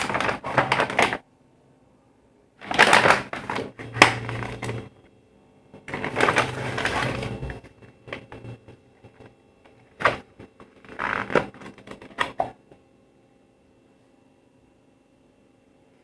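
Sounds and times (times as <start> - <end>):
packaging rustling and crinkling: 0.0 - 1.2, 2.6 - 4.9, 5.8 - 12.6.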